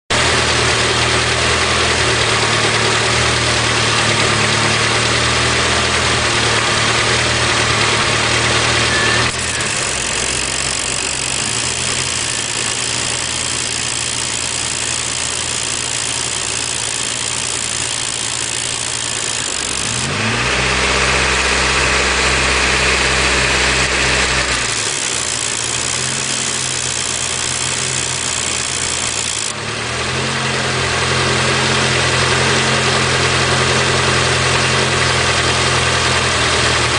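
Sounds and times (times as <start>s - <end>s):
car engine idling: 0.1s - 36.9s
short rising tone: 7.0s - 14.4s.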